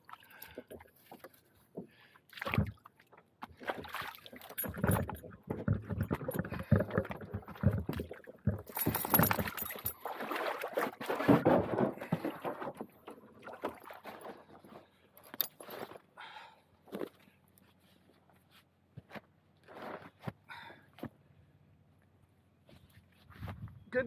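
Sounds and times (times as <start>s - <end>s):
knocks and scraping on canoe hull: 4.7s - 15.0s.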